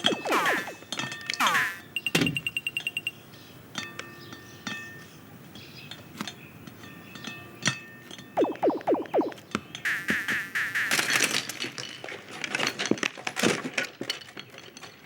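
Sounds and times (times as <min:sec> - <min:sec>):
quick falling swoops: 0:00.0 - 0:00.8, 0:01.4 - 0:01.8, 0:08.4 - 0:10.6.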